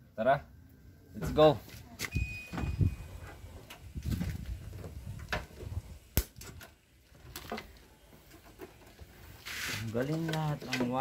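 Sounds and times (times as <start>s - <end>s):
hands working on wiring: 3.2s - 11.0s.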